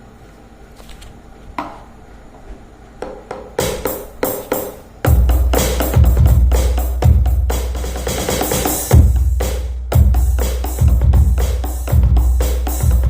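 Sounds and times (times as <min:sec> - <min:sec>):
drum sampling pad strikes: 0:03.0 - 0:13.0
heavy bass drum hits: 0:05.1 - 0:13.0.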